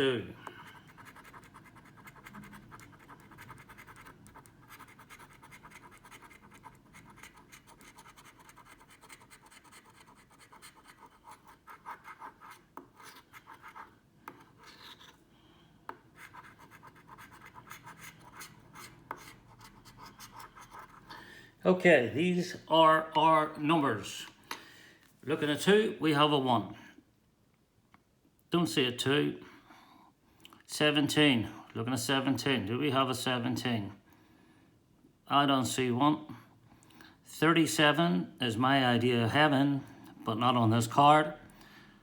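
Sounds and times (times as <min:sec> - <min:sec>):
scratchcard being scratched: 0:00.7 - 0:13.9.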